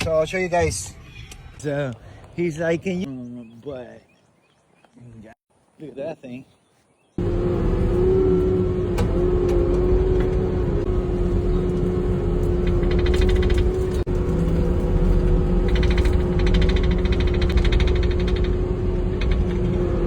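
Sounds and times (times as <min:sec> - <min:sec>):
engine whine over low rumble: 0:07.2 - 0:20.0
fast rattling clatter: 0:12.5 - 0:20.0.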